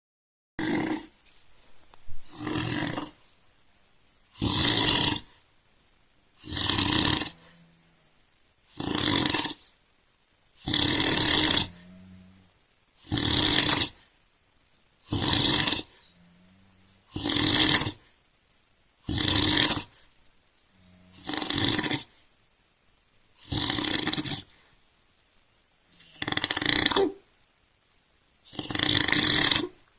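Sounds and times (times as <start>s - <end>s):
man snoring heavily: 0.6s - 1.1s, 2.3s - 3.2s, 4.4s - 5.3s, 6.4s - 7.9s, 8.7s - 9.7s, 10.6s - 14.0s, 15.1s - 18.1s, 19.1s - 20.0s, 20.8s - 22.1s, 23.4s - 24.6s, 26.1s - 27.1s, 28.5s - 29.7s
faint low hum: 0.9s - 8.8s, 9.6s - 23.5s.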